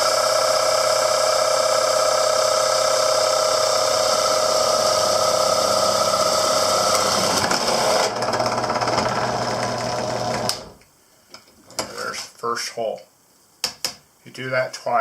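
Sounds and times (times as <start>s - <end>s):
drill screeching through plastic: 0.0s - 10.8s.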